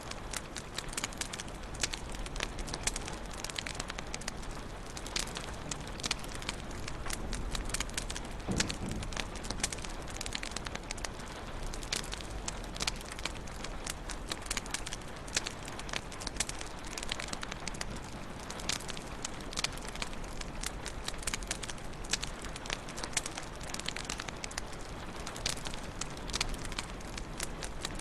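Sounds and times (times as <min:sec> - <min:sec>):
wood fire crackling: 0:00.0 - 0:28.0
soft low thud: 0:08.4 - 0:09.9.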